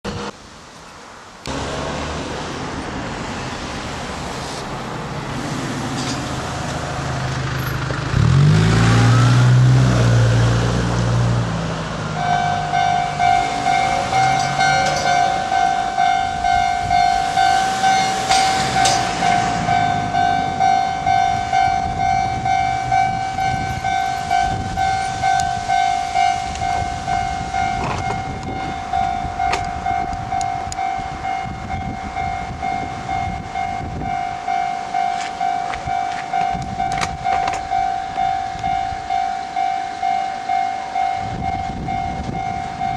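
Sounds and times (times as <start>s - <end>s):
road traffic: 0.0s - 42.9s
loud vehicle engine passing: 1.5s - 27.6s
level crossing warning bell: 12.2s - 42.9s.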